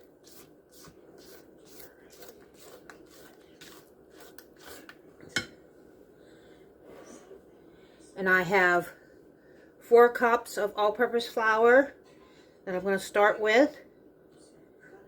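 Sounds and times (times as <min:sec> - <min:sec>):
utensil scraping in bowl: 0:00.0 - 0:05.5
utensil clinking against bowl: 0:05.3 - 0:05.6.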